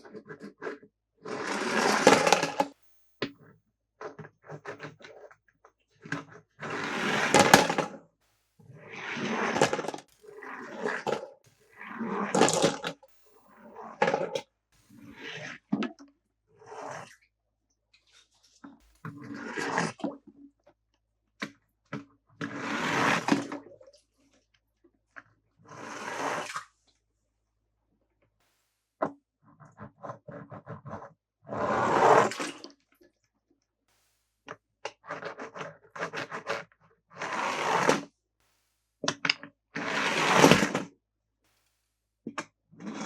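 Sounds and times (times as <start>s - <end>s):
sharp clicks: 9.8s - 13.7s.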